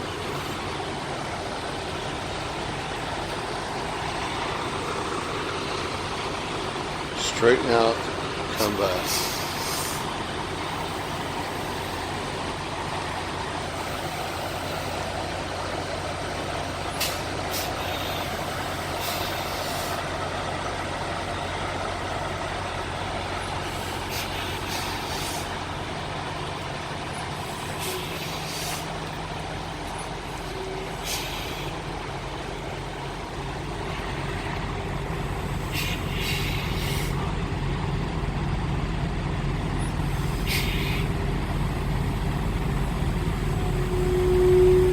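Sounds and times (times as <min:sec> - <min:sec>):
diesel truck engine running: 0:00.0 - 0:44.9
air brake hisses: 0:08.6 - 0:10.1, 0:17.0 - 0:20.0, 0:23.6 - 0:25.6, 0:27.4 - 0:29.0, 0:30.9 - 0:31.8, 0:35.5 - 0:37.2, 0:40.0 - 0:41.2.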